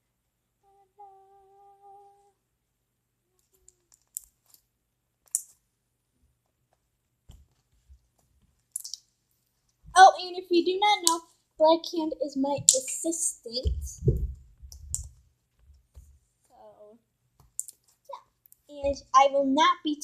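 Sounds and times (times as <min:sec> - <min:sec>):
person humming: 0:00.6 - 0:02.4, 0:03.3 - 0:03.9
faint clicks and taps: 0:06.3 - 0:10.0, 0:13.6 - 0:16.6.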